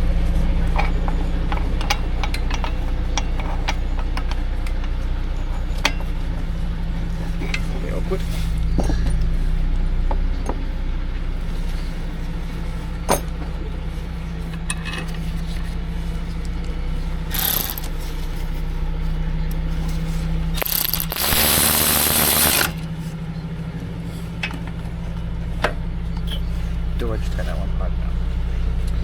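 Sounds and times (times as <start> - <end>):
low engine-like hum: 0.0 - 21.2, 21.9 - 29.0
sharp clicks: 17.3 - 17.9, 20.6 - 22.8
loud hiss: 20.6 - 22.8.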